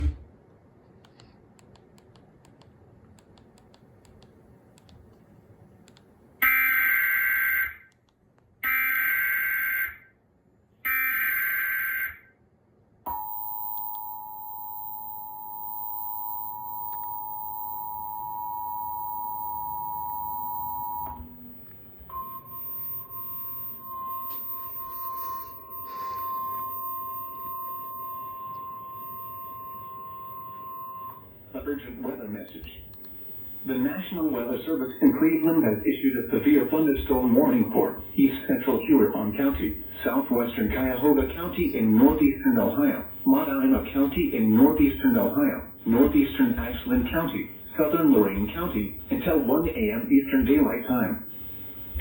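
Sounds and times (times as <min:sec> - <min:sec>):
two-tone attention signal: 0:13.1 - 0:31.6, 0:33.2 - 0:52.0
single steady tone: 0:13.1 - 0:52.0
screeching digital data bursts: 0:22.1 - 0:52.0.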